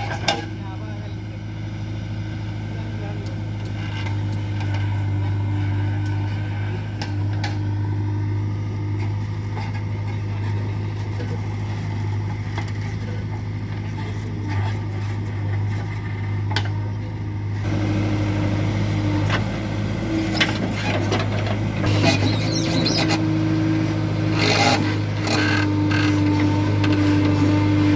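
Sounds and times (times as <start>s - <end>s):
heavy diesel engine running: 0.0s - 27.9s
machinery clatter: 20.2s - 23.2s.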